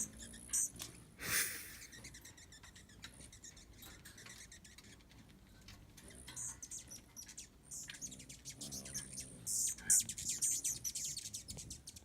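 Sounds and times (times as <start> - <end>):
hummingbird chips and ticks: 0.0 - 12.0.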